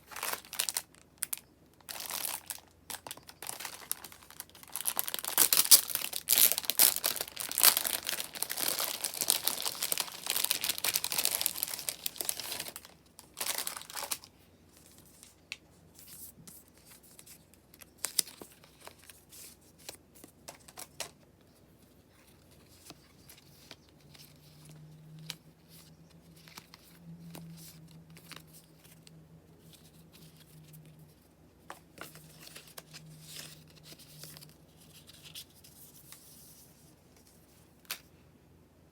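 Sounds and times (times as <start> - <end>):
plastic packaging crinkling and tearing: 0.0 - 14.3
light clicks and rustles of handling: 14.1 - 38.2.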